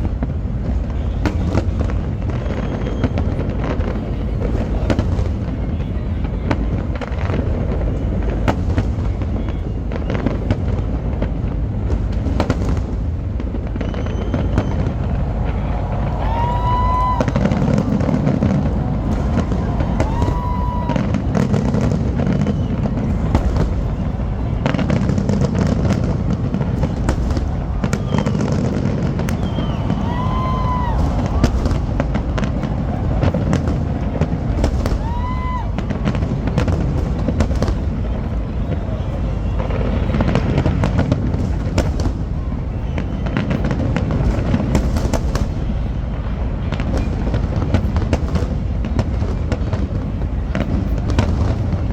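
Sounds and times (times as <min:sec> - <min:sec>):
firework bangs and crackling: 0:00.0 - 0:51.9
low rumble of booms: 0:11.4 - 0:38.7.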